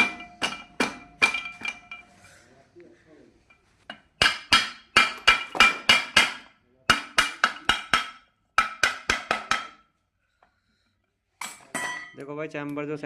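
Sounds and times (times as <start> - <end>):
hammer handle knocking on metal: 0.0 - 2.0, 3.9 - 9.8.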